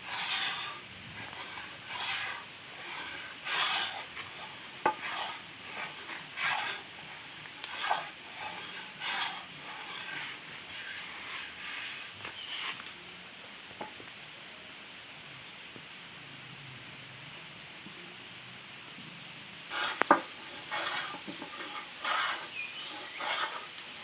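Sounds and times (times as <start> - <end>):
hand plane shaving wood: 0.0 - 13.0, 19.7 - 24.0.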